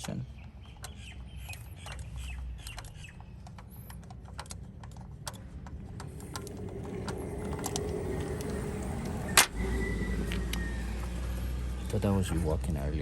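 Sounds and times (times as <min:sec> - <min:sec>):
tools clicking and tapping: 0:00.0 - 0:08.5.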